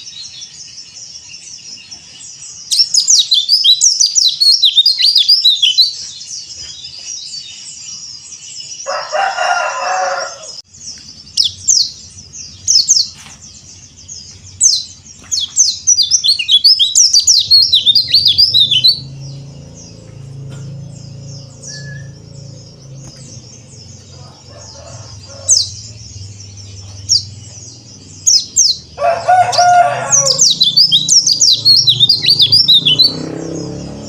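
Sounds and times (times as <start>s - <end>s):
bird twittering song: 0.0s - 34.0s
harsh lower bird call: 8.1s - 33.3s.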